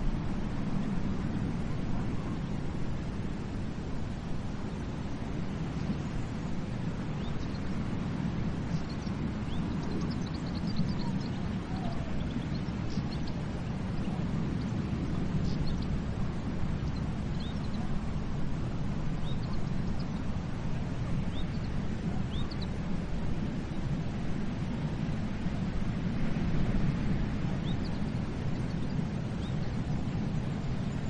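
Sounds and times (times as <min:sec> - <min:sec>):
ocean waves on a beach: 0:00.0 - 0:31.0
faint bird chirps: 0:08.7 - 0:13.4, 0:16.8 - 0:18.0, 0:21.1 - 0:22.7.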